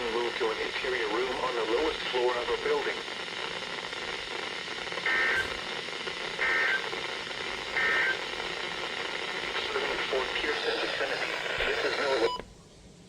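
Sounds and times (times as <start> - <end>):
steady background hiss: 0.0 - 13.0
digital data tone bursts: 5.0 - 5.7, 6.4 - 7.0, 7.6 - 8.5.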